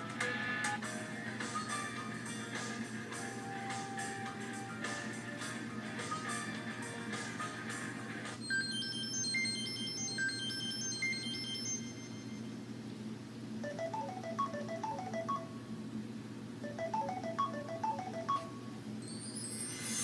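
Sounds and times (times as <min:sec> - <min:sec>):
phone ringtone chime: 0:08.5 - 0:12.4, 0:13.6 - 0:15.6, 0:16.6 - 0:20.0
melodic ringtone phrase: 0:13.6 - 0:15.6, 0:16.6 - 0:18.6.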